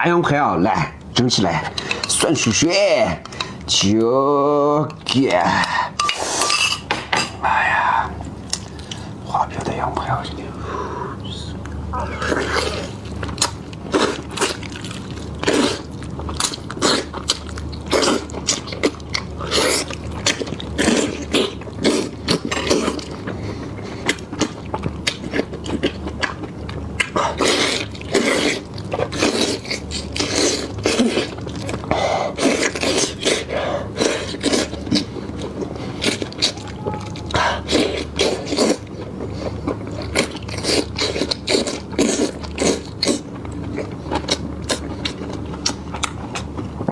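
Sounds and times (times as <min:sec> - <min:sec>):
faint steady hum: 0:00.0 - 0:46.9
person chewing food: 0:08.2 - 0:09.2, 0:11.6 - 0:46.9.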